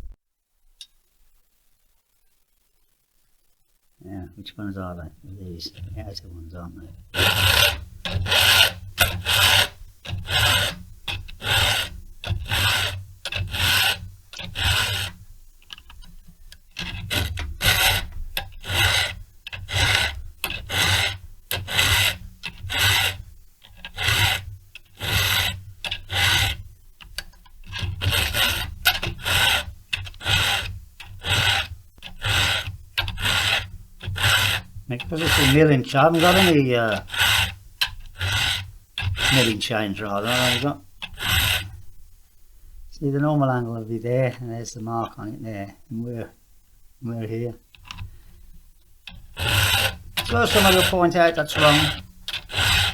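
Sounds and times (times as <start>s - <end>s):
file rasping on chainsaw chain: 7.1s - 16.1s, 16.7s - 41.8s, 47.8s - 48.0s, 49.1s - 52.9s.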